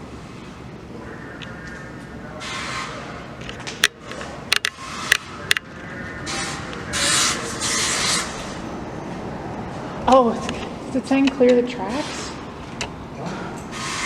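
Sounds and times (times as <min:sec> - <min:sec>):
gritty scraping and rubbing: 0:06.3 - 0:08.6, 0:11.8 - 0:12.5.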